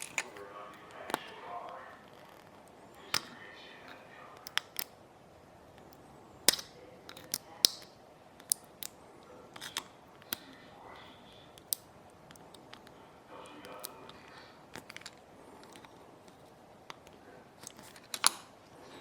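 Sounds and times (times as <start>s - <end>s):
repair tools clicking and tapping: 11.6s - 13.0s, 13.7s - 18.5s.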